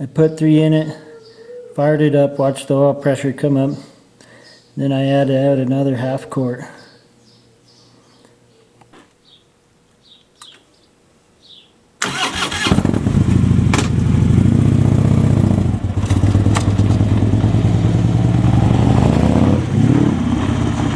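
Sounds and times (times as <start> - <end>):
motorcycle engine starting and idling: 12.0 - 20.9.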